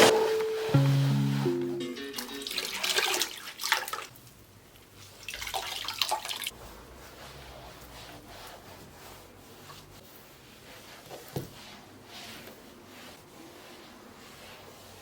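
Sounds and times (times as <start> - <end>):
water running and splashing: 2.2 - 4.1, 5.1 - 6.5.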